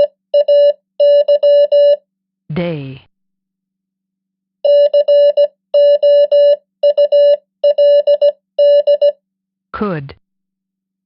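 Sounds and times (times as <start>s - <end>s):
morse code beeps: 0.0s - 2.1s, 4.6s - 9.2s.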